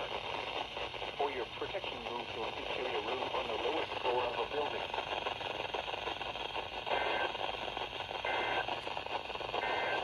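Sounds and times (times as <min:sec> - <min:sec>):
radio static hissing: 0:00.0 - 0:10.0
two-pitch data tone bursts: 0:09.6 - 0:10.0.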